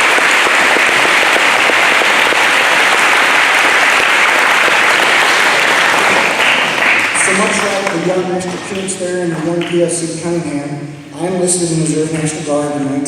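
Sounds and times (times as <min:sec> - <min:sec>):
audience applauding: 0:00.0 - 0:10.0.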